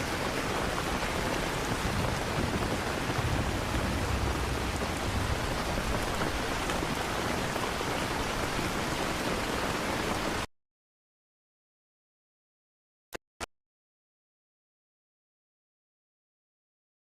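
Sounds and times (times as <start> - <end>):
steady rain: 0.0 - 10.5
thunder rumble: 0.1 - 8.8.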